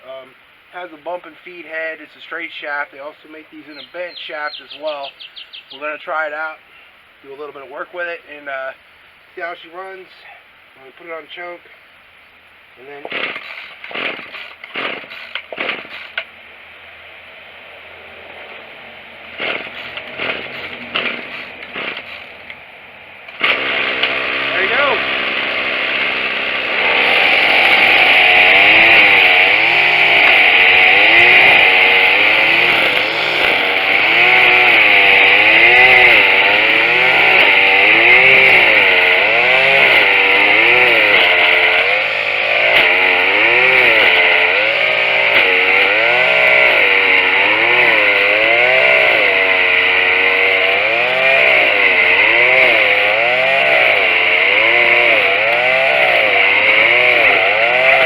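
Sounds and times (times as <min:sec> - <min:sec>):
string trimmer engine revving: 0:13.0 - 0:16.3, 0:17.8 - 0:58.0.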